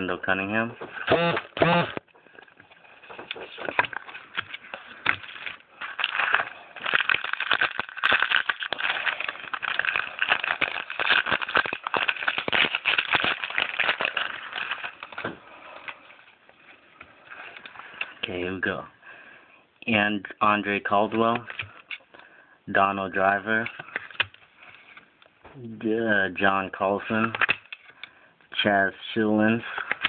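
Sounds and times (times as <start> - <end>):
foil wrapper crinkling: 2.2 - 18.3, 23.5 - 25.0, 29.6 - 30.0.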